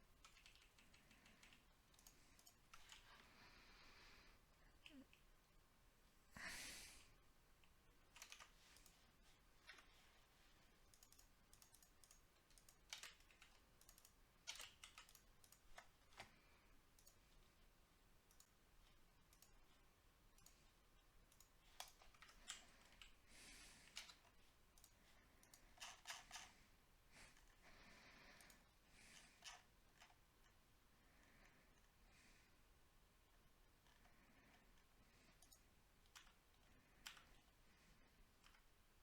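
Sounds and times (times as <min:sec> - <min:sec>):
faint clicks and taps: 0:33.2 - 0:38.8.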